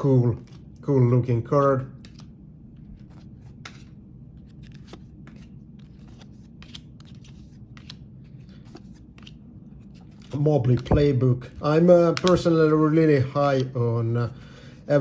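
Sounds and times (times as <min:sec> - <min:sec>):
low background hum: 0:00.0 - 0:15.0
trading cards sliding and clicking: 0:02.0 - 0:11.1.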